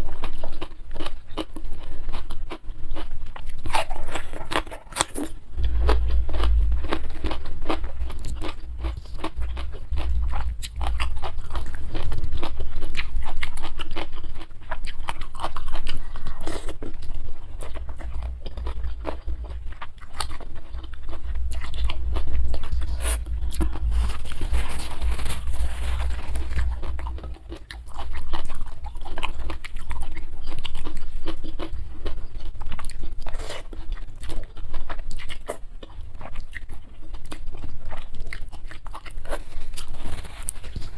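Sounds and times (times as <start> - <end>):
crisp crunching and chewing: 0.0 - 40.9.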